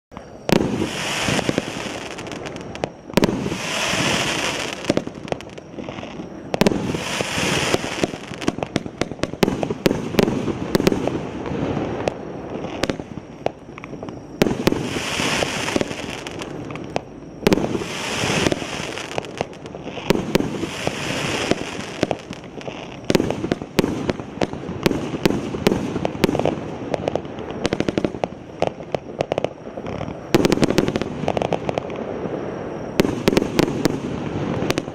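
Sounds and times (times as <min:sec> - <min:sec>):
firework launch pops and bursts: 0:00.1 - 0:34.9
loud hissing firework burst: 0:00.1 - 0:34.9.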